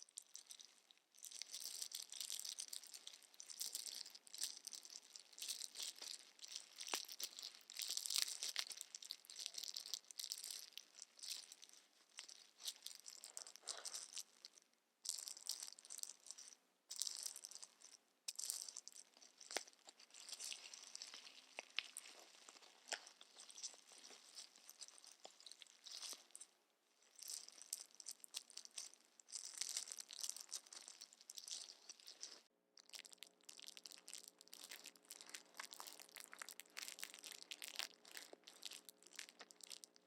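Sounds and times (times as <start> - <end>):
packaging crinkling and rustling: 18.6 - 26.5.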